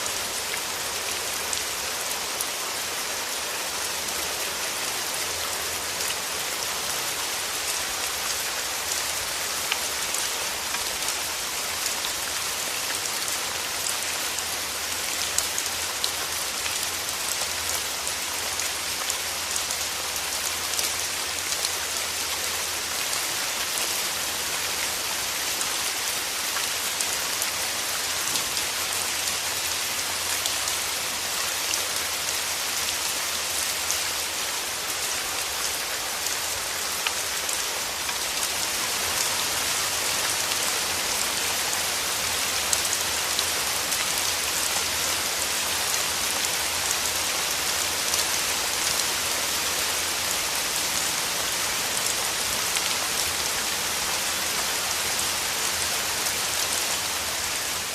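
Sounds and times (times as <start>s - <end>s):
steady rain hiss: 0.0s - 57.9s.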